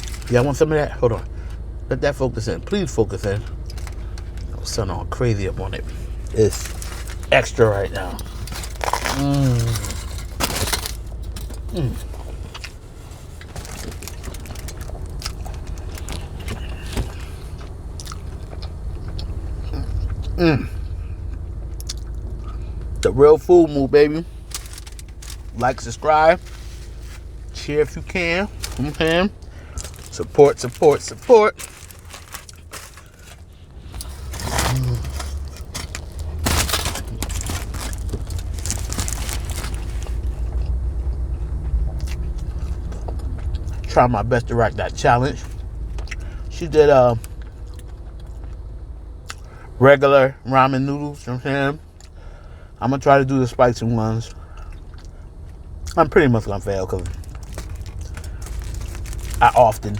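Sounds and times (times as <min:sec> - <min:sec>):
car cabin rumble: 0:00.0 - 0:59.9
food handling and chewing clicks: 0:03.3 - 0:04.6, 0:06.2 - 0:20.4, 0:24.3 - 0:25.8, 0:28.5 - 0:41.2, 0:45.4 - 0:46.3, 0:47.2 - 0:48.7, 0:56.9 - 0:59.9.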